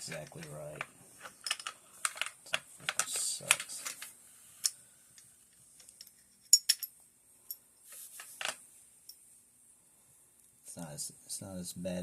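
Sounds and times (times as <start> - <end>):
metal gun parts clicking: 1.3 - 4.8
handling rustle: 7.8 - 8.6.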